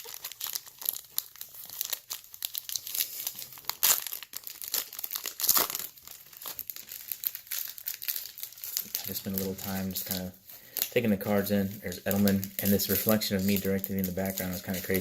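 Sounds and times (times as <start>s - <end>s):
trading cards shuffled in hands: 8.6s - 15.0s.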